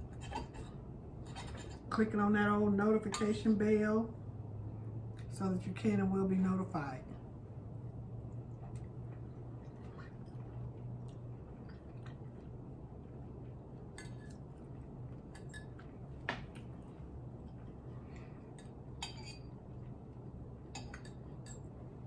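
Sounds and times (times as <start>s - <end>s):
steady low hum: 0.0s - 22.0s
cutlery clinking on a plate: 1.3s - 1.8s, 19.0s - 19.5s.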